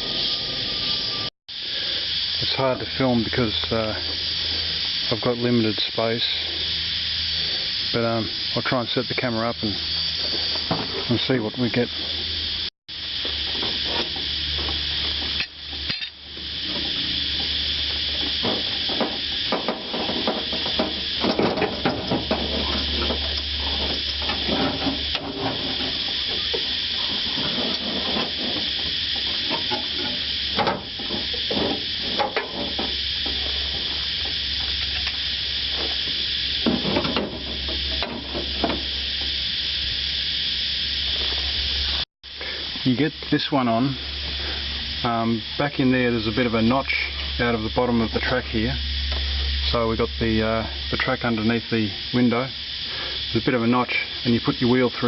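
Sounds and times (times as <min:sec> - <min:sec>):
low hum: 0:00.0 - 0:54.3
steady hiss: 0:00.0 - 0:55.0.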